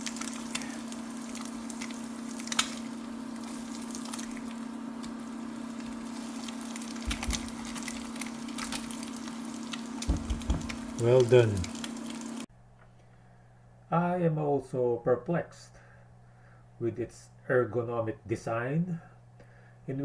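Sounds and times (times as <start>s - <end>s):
egg sizzling in a pan: 0.0s - 12.5s
steady low hum: 0.0s - 14.0s
turner clicking and scraping pan: 5.8s - 11.0s.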